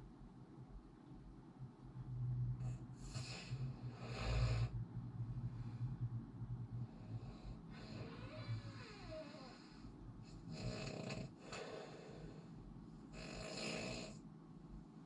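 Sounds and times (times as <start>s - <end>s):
person snoring: 3.0s - 4.8s, 7.0s - 12.5s, 13.1s - 14.2s.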